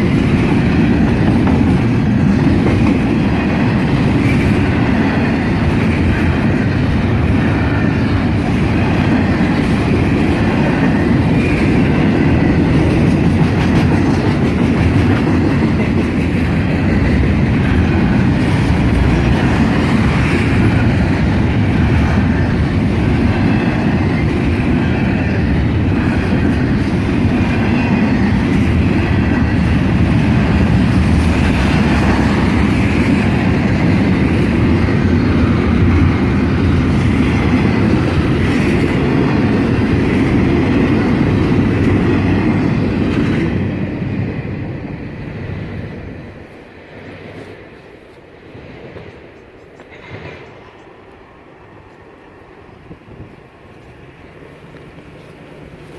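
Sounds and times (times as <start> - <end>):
freight train rumbling on rails: 0.0 - 55.9.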